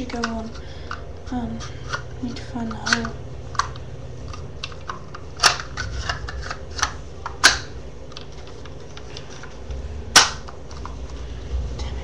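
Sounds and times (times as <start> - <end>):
sharp plastic clacks: 2.7 - 11.0
hard plastic parts clicking: 2.7 - 11.1.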